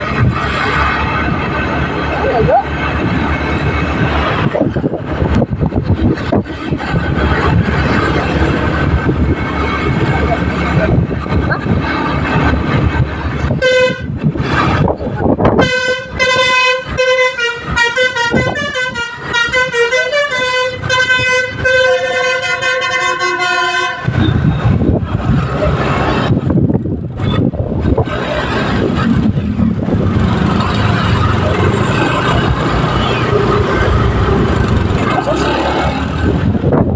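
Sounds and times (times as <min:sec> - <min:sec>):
vehicle noise: 0:00.0 - 0:36.9
musical bus horn tune: 0:13.5 - 0:14.2, 0:15.5 - 0:24.5.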